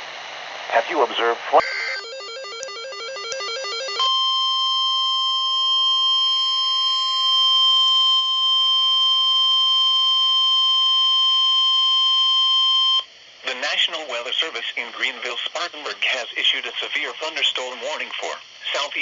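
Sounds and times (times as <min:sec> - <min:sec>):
rapidly stepping electronic tones: 0:01.6 - 0:04.8
loud steady electronic alarm tone: 0:01.6 - 0:13.0.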